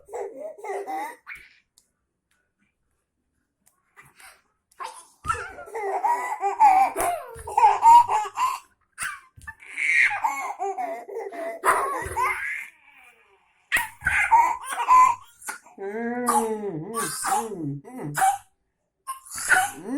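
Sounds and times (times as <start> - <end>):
baby laughing and babbling: 0.0 - 1.4, 4.8 - 17.5.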